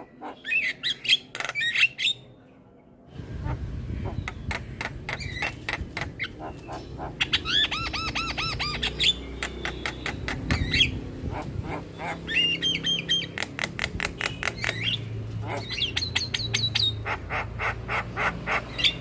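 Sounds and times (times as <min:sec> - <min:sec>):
bird singing clicks and chatter: 0:08.7 - 0:10.9, 0:12.9 - 0:16.7.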